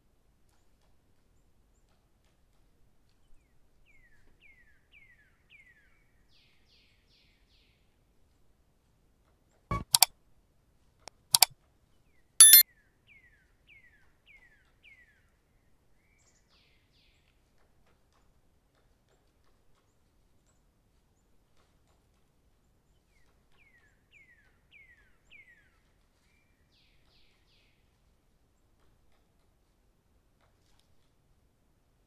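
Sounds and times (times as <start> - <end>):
sharp metallic clinks: 12.4 - 12.6.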